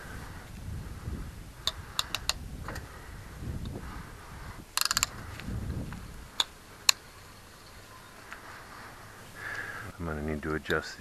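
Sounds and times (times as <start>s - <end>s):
ratchet clicks rattling: 1.7s - 2.8s, 4.8s - 5.2s
bicycle chain whirring: 1.7s - 9.0s
gear shifting clicks: 4.8s - 8.4s.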